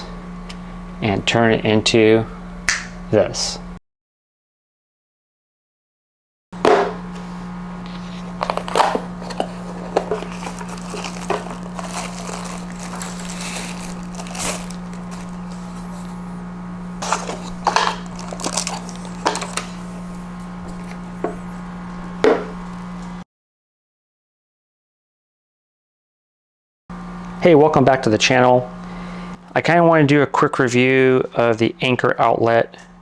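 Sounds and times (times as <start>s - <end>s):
low electrical hum: 0.0s - 3.8s, 6.6s - 23.2s, 27.0s - 33.0s
handling noises crinkling and knocks: 6.6s - 22.4s.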